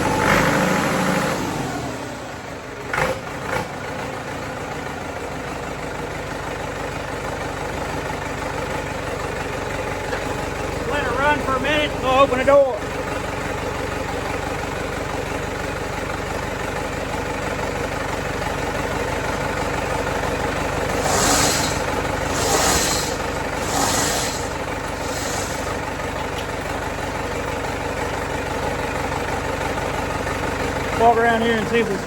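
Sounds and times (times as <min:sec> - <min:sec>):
diesel tractor engine idling: 0:00.0 - 0:32.0
short hissing rushes: 0:20.9 - 0:25.9.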